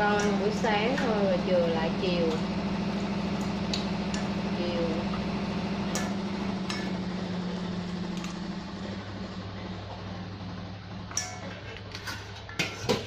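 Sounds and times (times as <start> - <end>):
utensils and dishes clicking: 0.0 - 1.2, 11.1 - 13.0
low mechanical hum: 0.0 - 13.0.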